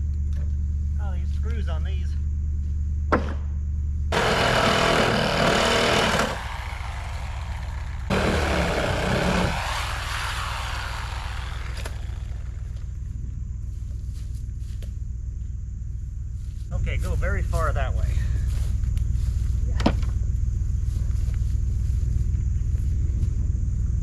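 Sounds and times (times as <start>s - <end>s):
low engine hum: 0.0s - 17.2s
reciprocating saw cutting wood: 4.1s - 12.8s.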